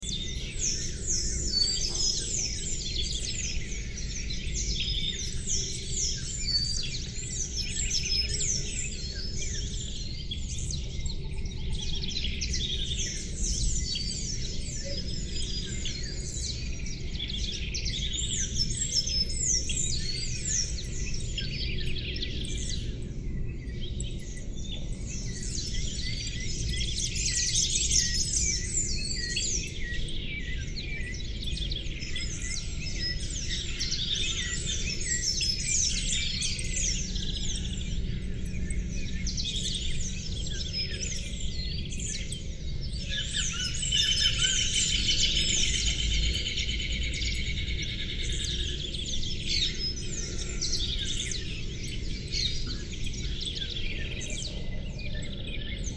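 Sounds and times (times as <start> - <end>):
songbirds chirping and singing: 0.0 - 55.9.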